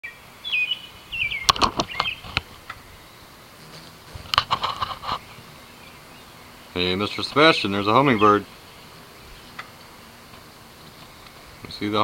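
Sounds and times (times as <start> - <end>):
bird chirping clicks: 0.5 - 2.8, 9.4 - 11.8.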